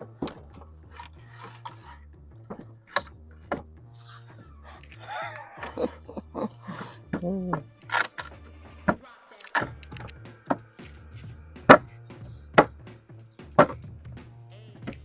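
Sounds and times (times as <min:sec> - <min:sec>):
hammer striking wooden board: 0:11.7 - 0:11.9, 0:12.6 - 0:12.8, 0:13.5 - 0:13.9.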